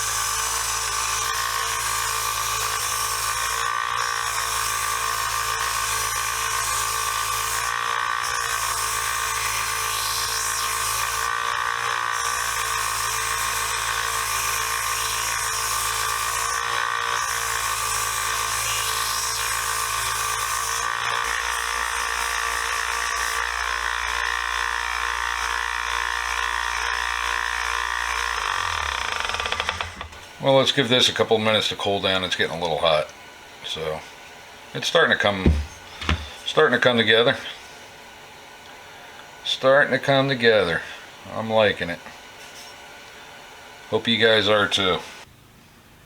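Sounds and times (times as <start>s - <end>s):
wire wheel grinding steel: 0.0s - 23.4s.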